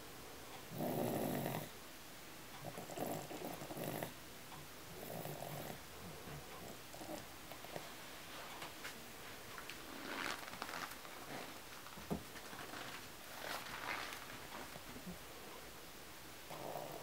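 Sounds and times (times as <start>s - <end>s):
rasping snores: 0.7s - 1.7s, 2.7s - 4.2s, 5.0s - 5.8s, 16.5s - 17.0s.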